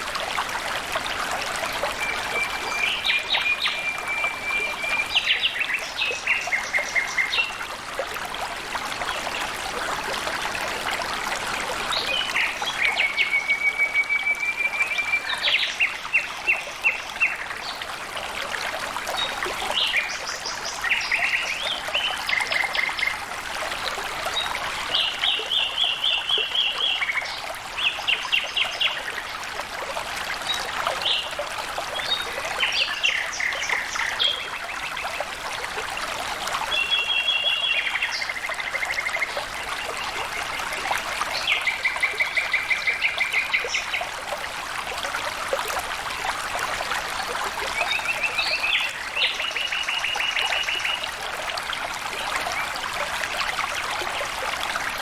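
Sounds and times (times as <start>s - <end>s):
water flowing and trickling: 0.0s - 55.0s.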